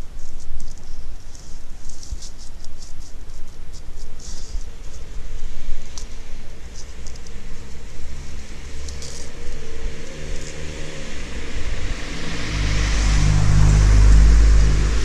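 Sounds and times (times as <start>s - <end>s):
vehicle engine running: 7.0s - 15.0s.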